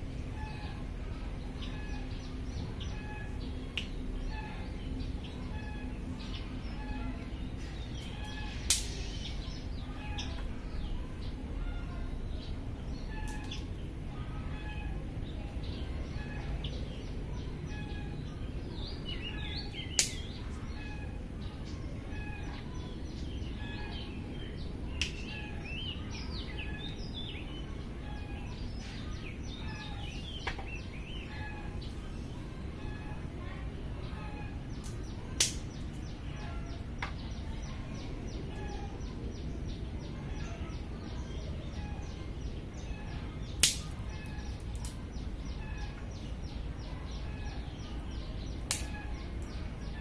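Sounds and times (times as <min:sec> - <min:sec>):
birds chirping: 0:00.0 - 0:50.0
low background rumble: 0:00.0 - 0:50.0
sharp clicks: 0:43.6 - 0:43.8.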